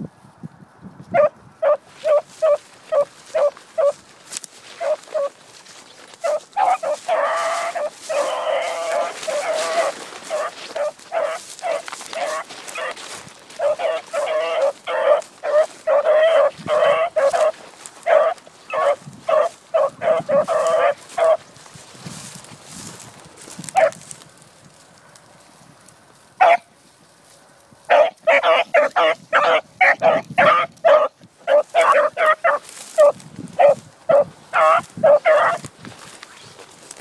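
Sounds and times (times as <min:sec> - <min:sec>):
dogs barking: 0:01.1 - 0:21.5, 0:23.4 - 0:24.1, 0:26.4 - 0:26.7, 0:27.9 - 0:35.7.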